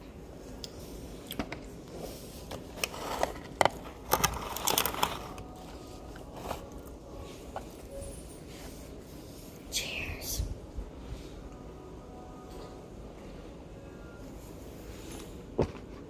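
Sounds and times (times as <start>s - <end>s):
crunching and chewing food: 2.6s - 7.0s.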